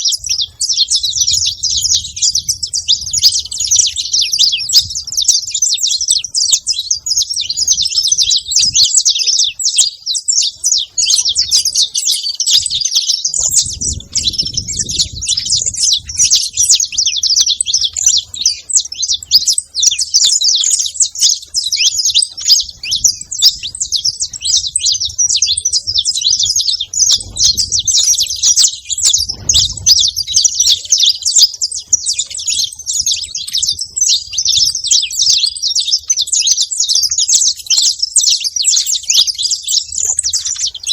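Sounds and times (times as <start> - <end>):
finches chirping and singing: 0.0 - 40.9
low rumble: 13.4 - 16.7, 22.9 - 30.6.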